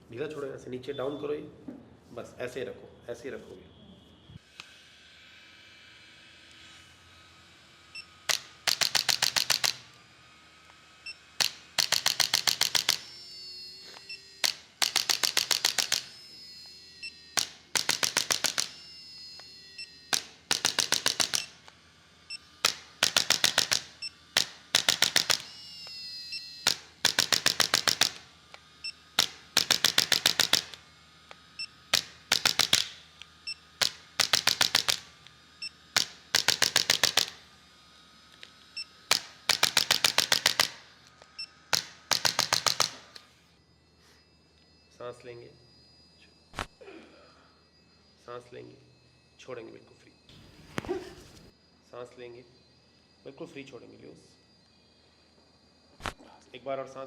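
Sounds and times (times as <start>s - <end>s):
adjusting instrument rapid clicks: 8.2s - 10.0s, 11.4s - 13.1s, 14.4s - 16.1s, 17.4s - 18.8s, 20.1s - 21.8s, 22.6s - 25.6s, 26.6s - 28.3s, 29.1s - 35.1s, 35.9s - 37.4s, 39.1s - 40.8s, 41.7s - 43.2s.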